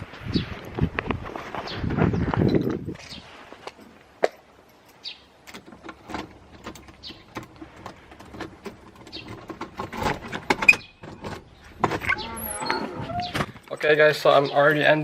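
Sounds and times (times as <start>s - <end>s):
bird chirping: 4.9s - 5.5s, 6.8s - 7.6s, 8.8s - 9.9s, 10.5s - 13.6s, 14.2s - 15.0s.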